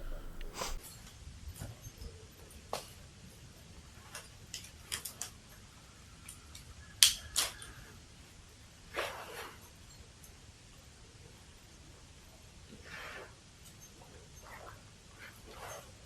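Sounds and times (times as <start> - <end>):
soft rustle: 0.0 - 0.8.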